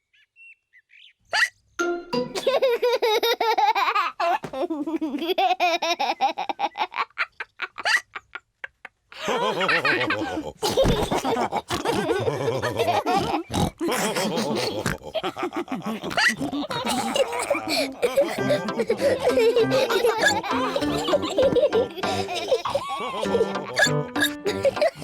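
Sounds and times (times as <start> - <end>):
cartoon pigs laughing with snorts: 1.3 - 1.6, 2.3 - 25.0.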